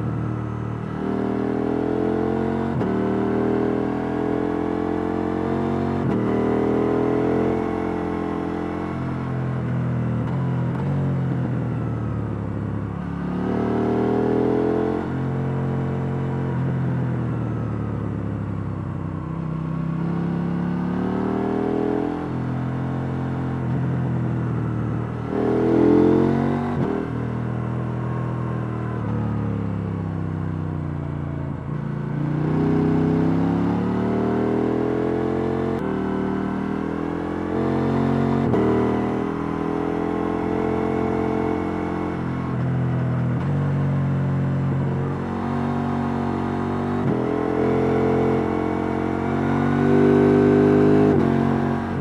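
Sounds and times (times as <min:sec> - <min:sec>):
motorcycle engine accelerating: 0:00.0 - 0:52.0.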